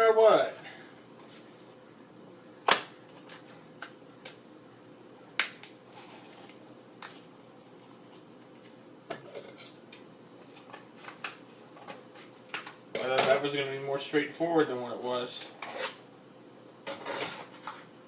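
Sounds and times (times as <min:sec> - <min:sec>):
plastic package clicks and snaps: 0:05.4 - 0:05.8.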